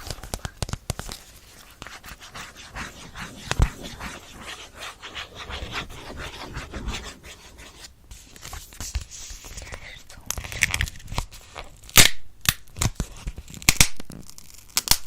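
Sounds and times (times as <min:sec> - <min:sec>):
rhythmic scratching strokes: 0:02.0 - 0:08.0.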